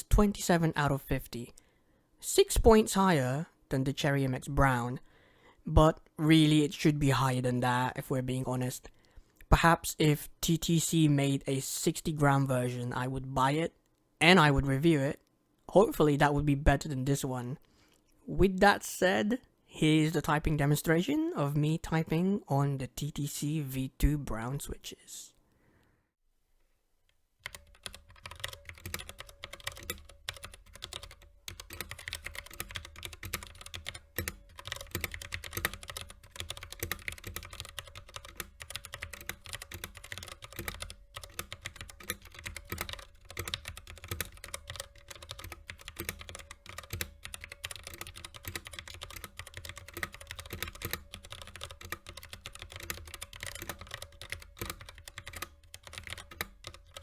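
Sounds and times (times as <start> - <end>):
mechanical keyboard typing: 27.4 - 57.0.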